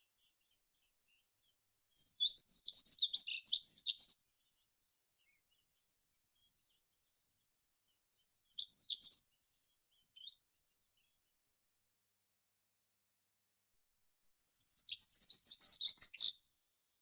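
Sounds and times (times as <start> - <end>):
songbirds singing: 14.6 - 16.4.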